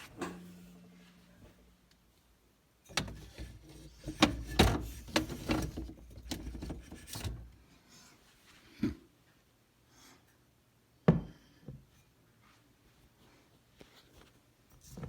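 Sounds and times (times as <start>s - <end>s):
handling knocks and rubbing: 2.9s - 7.6s.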